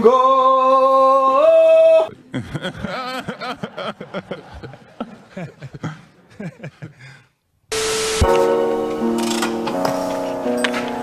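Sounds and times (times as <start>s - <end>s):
burst of hiss: 7.7s - 9.4s
background music with held notes: 7.7s - 11.0s.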